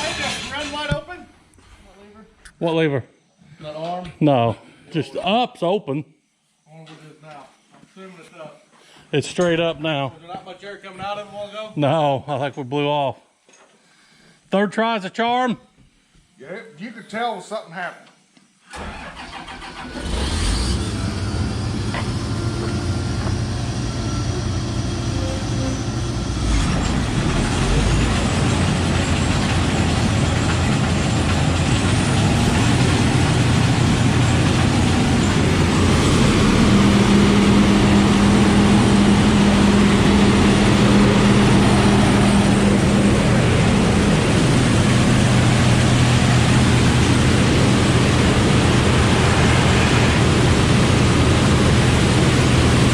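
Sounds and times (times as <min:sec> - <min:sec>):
combine engine running: 0:00.0 - 0:01.0, 0:18.8 - 0:52.9
heavy rush of fan air: 0:18.8 - 0:52.9.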